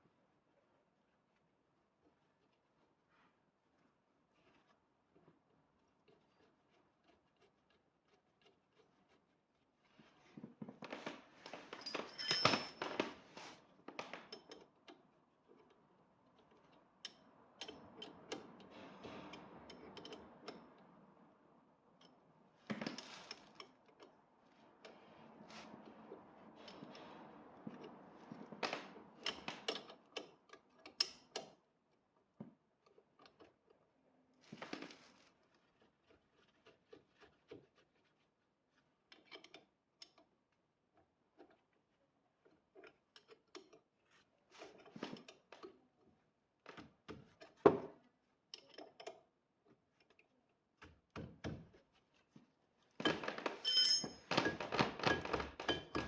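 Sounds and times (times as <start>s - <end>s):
hand tools clicking and knocking: 53.0s - 56.0s.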